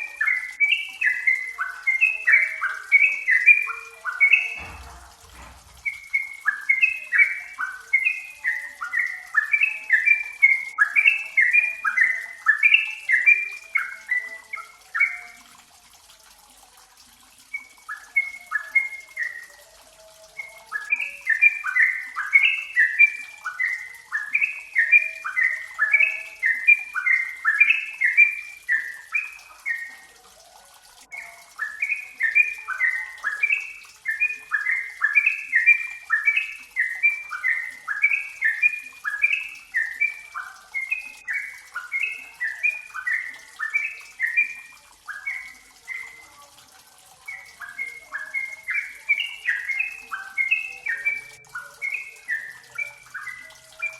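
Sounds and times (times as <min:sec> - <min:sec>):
bulbul singing: 0:00.0 - 0:53.9.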